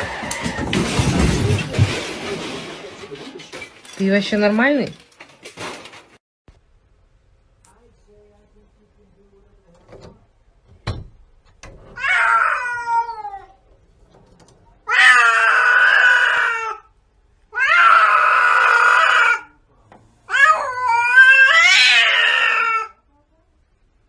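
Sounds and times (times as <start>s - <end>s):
cat yowling: 12.0s - 13.6s, 14.9s - 16.9s, 17.5s - 19.6s, 20.3s - 23.0s.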